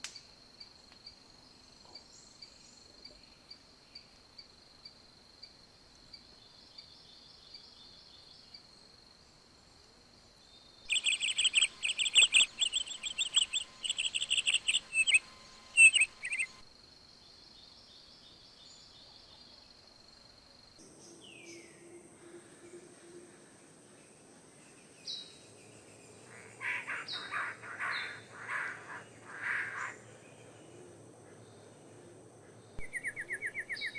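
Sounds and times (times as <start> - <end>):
crickets trilling: 8.5 - 18.9, 19.9 - 33.9
bird chirping rapidly: 10.9 - 16.6, 26.2 - 30.0, 32.8 - 33.9.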